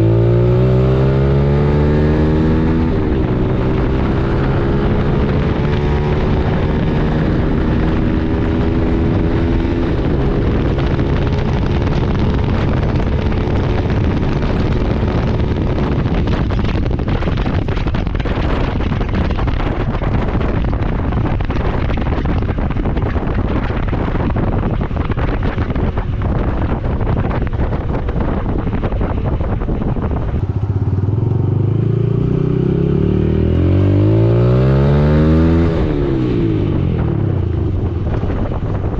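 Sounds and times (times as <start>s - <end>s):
motorcycle engine running: 0.0s - 38.9s
wind and road noise: 0.0s - 38.9s
engine revving up: 31.1s - 36.9s.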